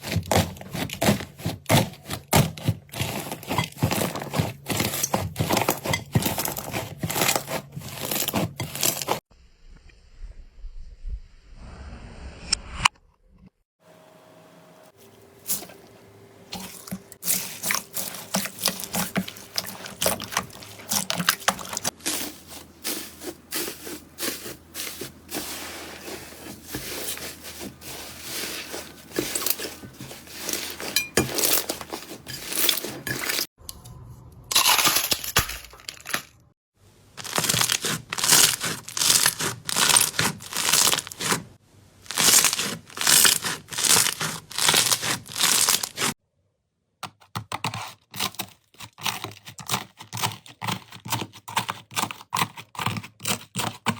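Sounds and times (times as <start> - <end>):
slime crackling and popping: 37.2 - 41.4, 42.1 - 46.1.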